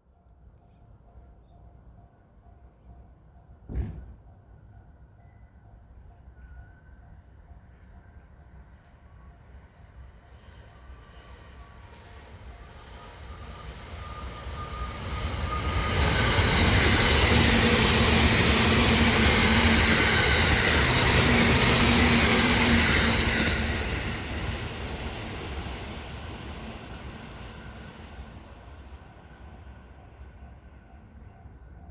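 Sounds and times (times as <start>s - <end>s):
electric train passing: 7.1s - 31.9s.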